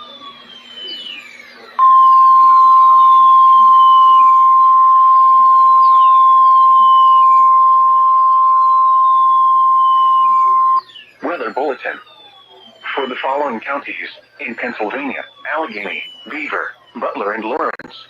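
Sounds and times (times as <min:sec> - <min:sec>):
loud steady warning alarm tone: 0:00.0 - 0:17.8
thin falling whistles: 0:00.4 - 0:11.1.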